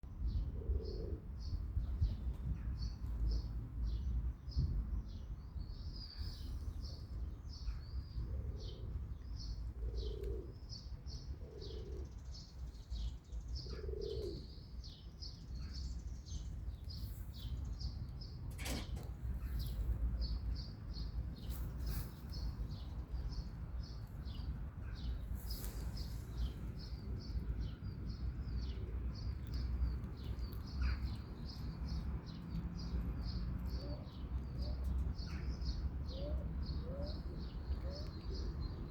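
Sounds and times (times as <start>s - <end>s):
constant low rumble: 0.1s - 11.4s, 12.0s - 38.9s
small birds chirping: 0.3s - 38.9s
dove cooing: 0.5s - 1.3s, 8.2s - 9.1s, 9.7s - 12.2s, 13.6s - 14.6s, 36.1s - 38.6s.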